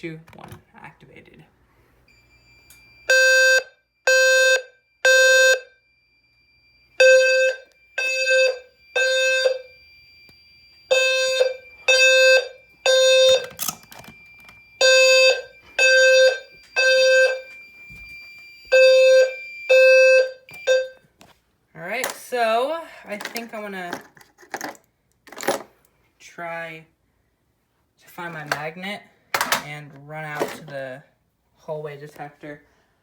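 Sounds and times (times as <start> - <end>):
low buzzy fire alarm beeps: 2.1 - 21.1.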